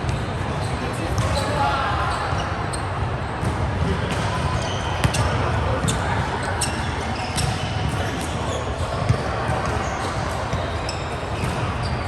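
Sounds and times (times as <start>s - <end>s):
shoes squeaking on court floor: 0.0s - 3.5s, 4.2s - 12.0s
volleyball hits and bounces: 3.4s - 6.1s, 11.3s - 12.0s.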